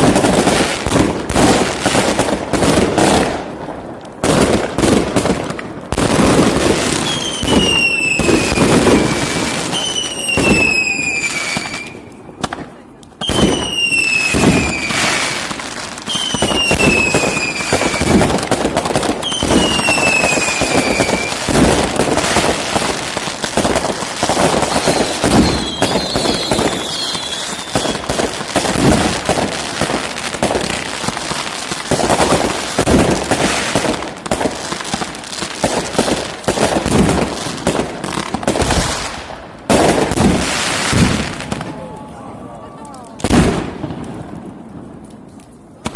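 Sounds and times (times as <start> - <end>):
fireworks launches and bursts: 0.0 - 42.2, 42.8 - 45.9
fireworks whistles: 6.6 - 12.2, 13.2 - 29.5
warbling firework whistle: 7.0 - 12.1, 13.2 - 15.4, 16.1 - 18.3, 19.2 - 21.5, 24.6 - 28.1.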